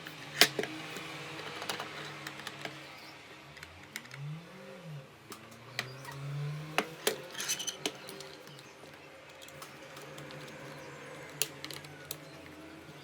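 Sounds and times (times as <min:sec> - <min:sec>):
small metal parts clinking: 0:00.0 - 0:02.8, 0:05.4 - 0:12.6.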